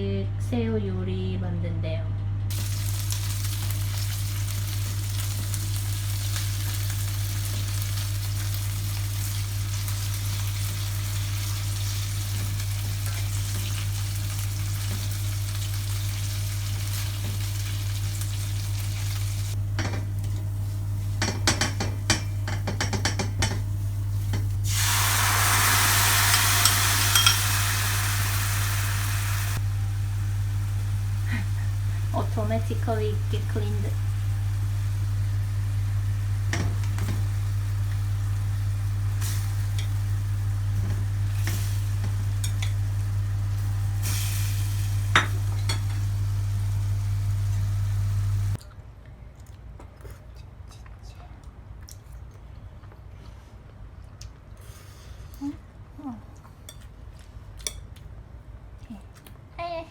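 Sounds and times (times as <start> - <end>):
prawns sizzling in a pan: 2.5 - 48.6
metal utensil scraping pan: 26.3 - 27.5.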